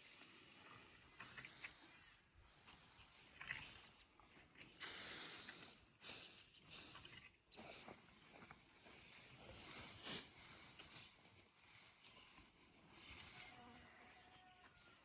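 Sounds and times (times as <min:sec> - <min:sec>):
dry hay rustling: 0:07.6 - 0:15.0.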